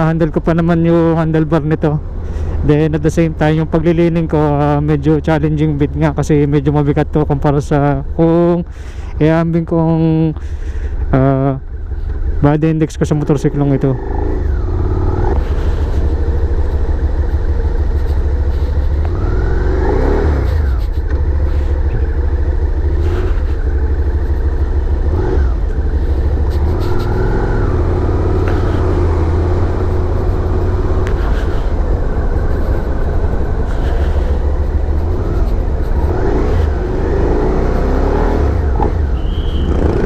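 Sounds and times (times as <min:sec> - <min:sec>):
motorcycle engine running: 0:09.6 - 0:40.0.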